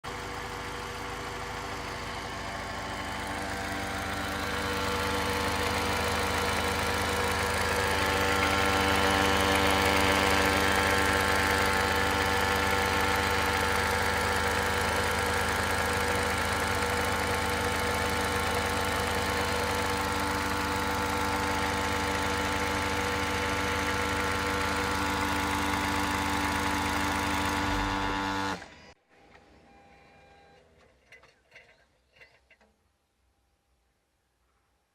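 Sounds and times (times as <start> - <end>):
car engine idling: 0.1 - 28.8
electric motor-like hum: 3.5 - 28.8.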